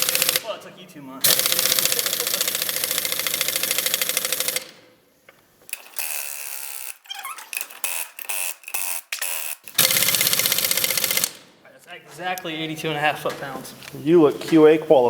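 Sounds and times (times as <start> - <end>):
impact wrench hammering: 0.0 - 0.5, 1.2 - 4.9, 7.7 - 11.5.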